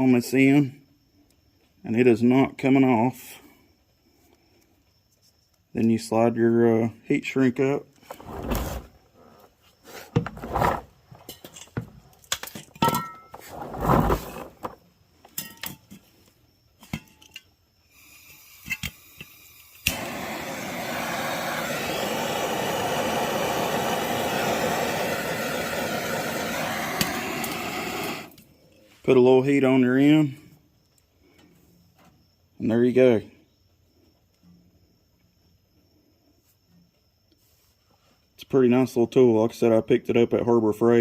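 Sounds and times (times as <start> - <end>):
heat gun blowing hiss: 17.9 - 28.4.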